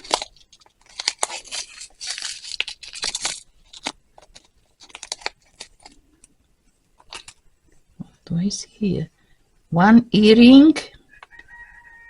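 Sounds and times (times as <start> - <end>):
plastic bag tearing and rustling: 0.0 - 6.0, 7.0 - 7.4
plastic crackles and clicks: 0.0 - 7.5.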